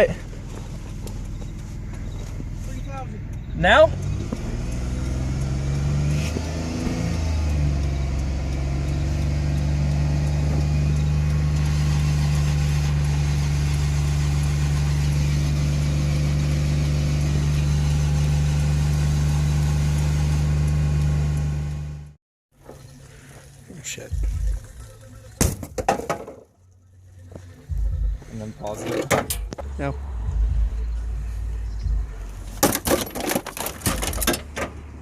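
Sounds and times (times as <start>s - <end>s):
car engine revving: 0.0s - 22.2s, 27.1s - 35.0s.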